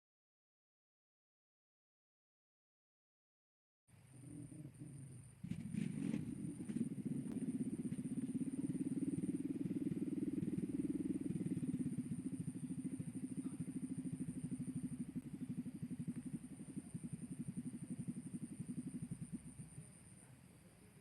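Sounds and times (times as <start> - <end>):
small engine idling: 3.9 - 21.0.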